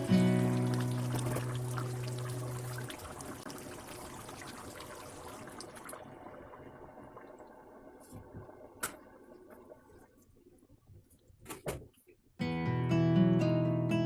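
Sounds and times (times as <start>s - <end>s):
curry crackling in a pot: 0.0s - 7.0s.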